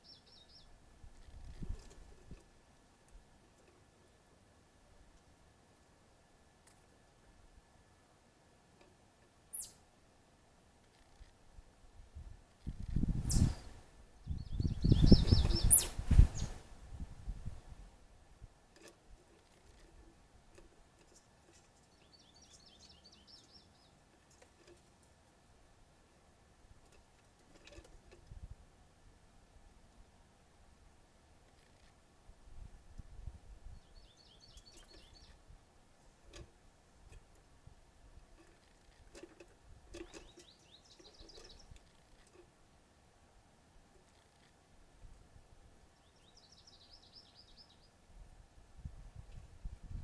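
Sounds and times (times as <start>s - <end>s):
faint songbird chirping: 0.0s - 2.5s, 8.8s - 9.9s, 12.6s - 16.7s, 19.2s - 25.2s, 33.2s - 35.6s, 38.1s - 42.6s, 45.8s - 48.1s
high bird chirps: 9.5s - 9.8s, 14.3s - 16.5s.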